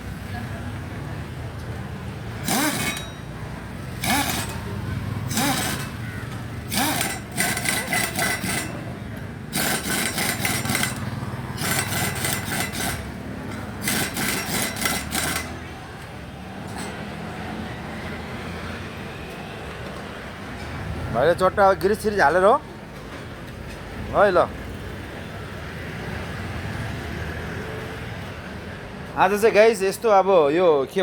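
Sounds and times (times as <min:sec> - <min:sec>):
impact wrench hammering: 0:02.4 - 0:15.6.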